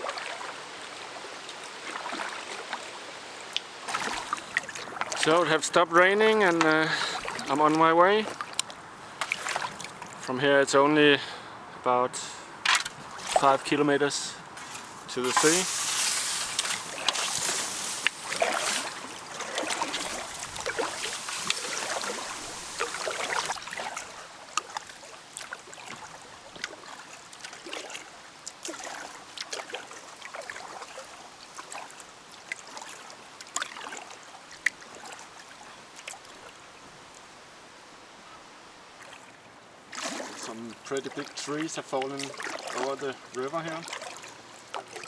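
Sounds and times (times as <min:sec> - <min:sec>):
paddle splashing in water: 0:00.0 - 0:10.3, 0:12.6 - 0:36.6, 0:39.0 - 0:45.0
water dripping: 0:14.6 - 0:27.7.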